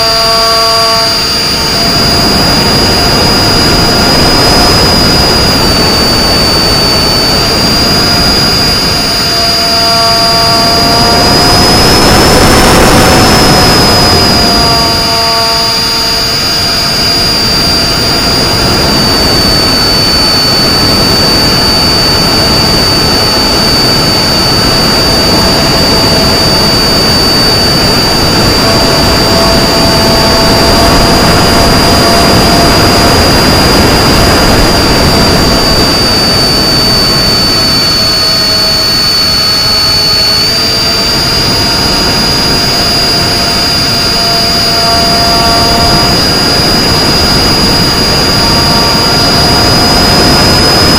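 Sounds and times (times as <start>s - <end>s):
electric motor propeller whine: 0.0s - 50.9s
wind rushing: 1.5s - 15.1s.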